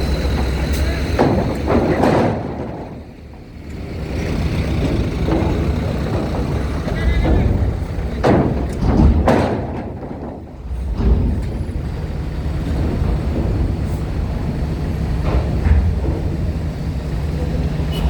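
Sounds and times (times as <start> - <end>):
heavy vehicle engines rumbling: 0.0 - 18.0.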